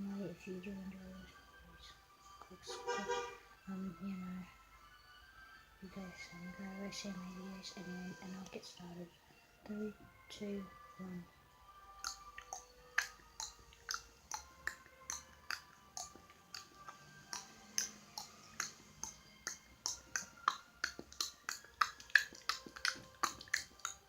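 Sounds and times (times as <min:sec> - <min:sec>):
faint background music: 0:00.0 - 0:24.0
tongue clicks: 0:12.0 - 0:24.0.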